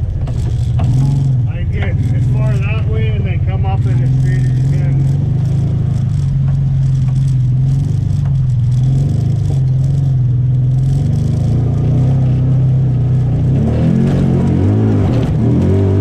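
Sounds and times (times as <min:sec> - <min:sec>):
vehicle engine running: 0:00.0 - 0:16.0.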